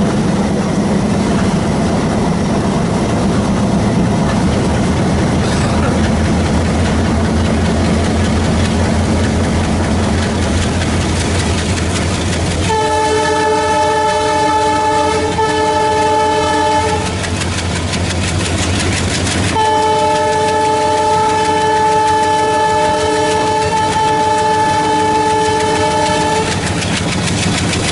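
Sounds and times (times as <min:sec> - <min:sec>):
locomotive engine chugging: 0:00.0 - 0:27.9
multi-note locomotive horn: 0:12.6 - 0:17.4, 0:19.5 - 0:26.8.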